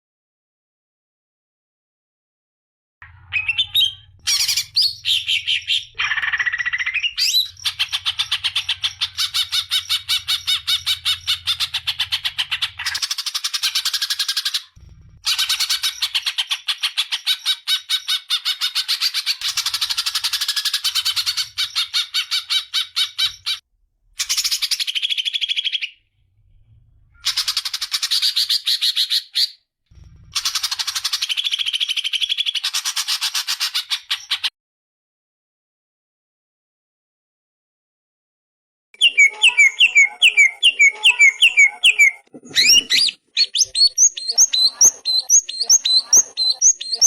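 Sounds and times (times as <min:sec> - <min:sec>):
faint low hum: 0:14.8 - 0:15.8.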